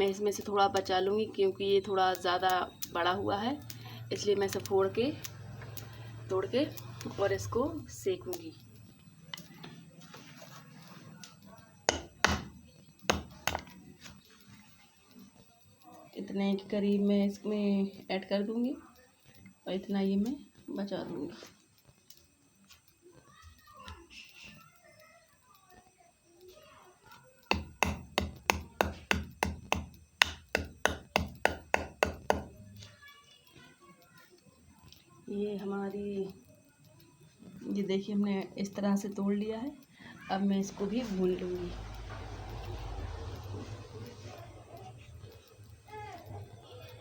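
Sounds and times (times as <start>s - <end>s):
sharp knocks on nutmeg: 11.9s - 12.5s
nutmeg being pounded: 11.9s - 13.7s, 27.5s - 32.6s.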